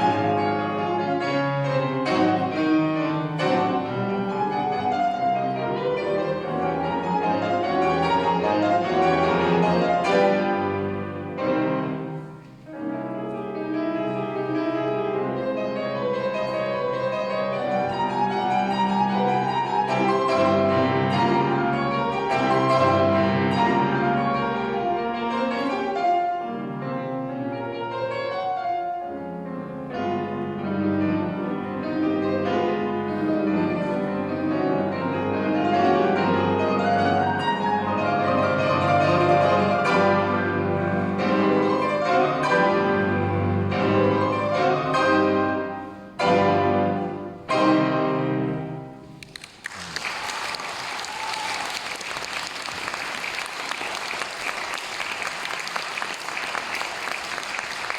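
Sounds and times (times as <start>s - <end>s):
piano duet: 0.0s - 57.9s
audience applause: 49.2s - 57.9s.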